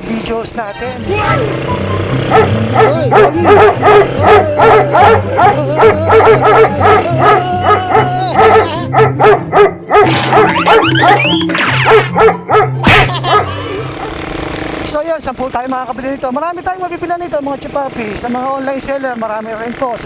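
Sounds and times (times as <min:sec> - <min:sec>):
background music with bass line: 0:01.0 - 0:14.0
dog barking and yelping: 0:02.3 - 0:14.2.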